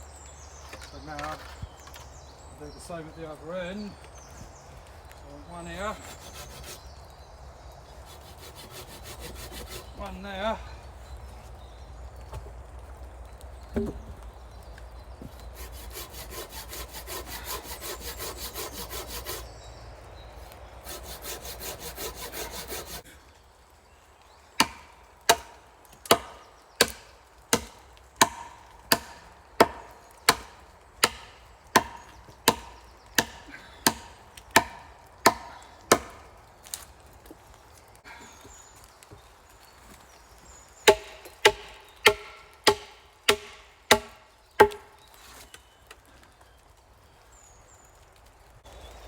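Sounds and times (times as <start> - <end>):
hand saw cutting wood: 5.6 - 6.9, 8.0 - 10.2, 15.5 - 19.5, 20.4 - 23.0, 26.1 - 36.1, 40.9 - 44.8
wood being struck: 13.7 - 14.2, 24.6 - 36.2, 40.8 - 44.9.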